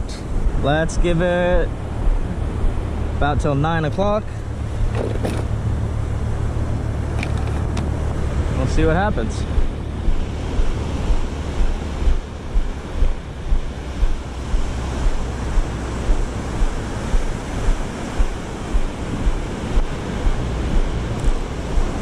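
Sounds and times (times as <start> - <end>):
ocean surf washing onto beach: 0.0 - 22.0
wind buffeting microphone: 0.0 - 22.0
low thuds: 0.4 - 3.5, 4.6 - 5.7, 9.4 - 22.0.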